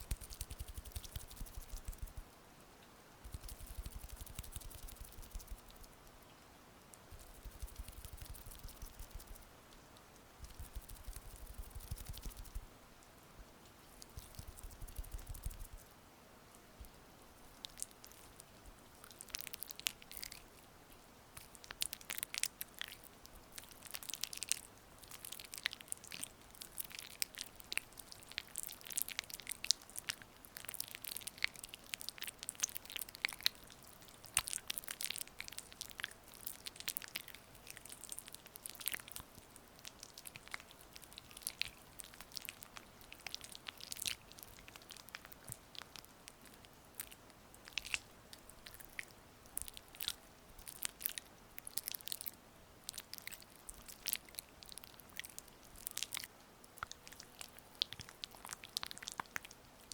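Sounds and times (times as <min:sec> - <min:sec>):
oiled hands rubbing wet crackles: 0:00.0 - 0:02.3, 0:03.2 - 0:05.9, 0:10.4 - 0:12.6.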